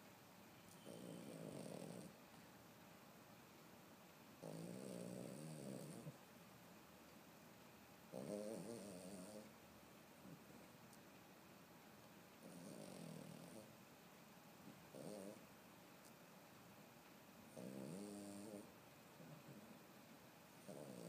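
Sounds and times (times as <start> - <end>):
pet snoring: 0.7 - 2.2, 4.4 - 6.2, 8.1 - 9.5, 12.4 - 13.8, 14.9 - 15.4, 17.5 - 19.8, 20.6 - 21.0.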